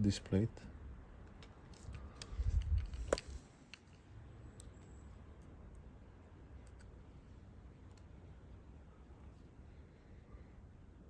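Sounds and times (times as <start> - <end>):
faint ticks of small parts: 1.2 - 7.0, 7.8 - 8.2.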